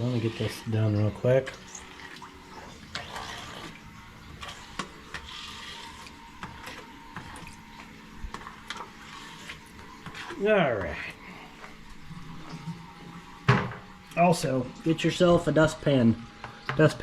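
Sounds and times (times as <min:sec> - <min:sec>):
squeegee wet swishing: 0:01.9 - 0:07.7, 0:08.4 - 0:11.2.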